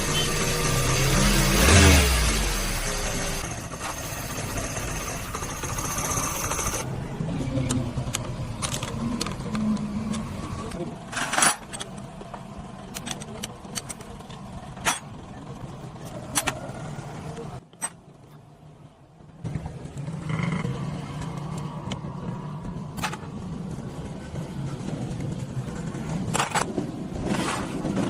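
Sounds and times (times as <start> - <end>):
motorcycle engine running: 0.0 - 10.7.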